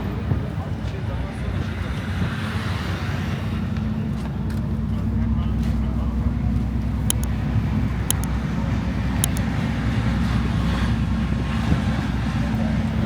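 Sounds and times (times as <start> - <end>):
short high-pitched clicks: 7.1 - 7.3.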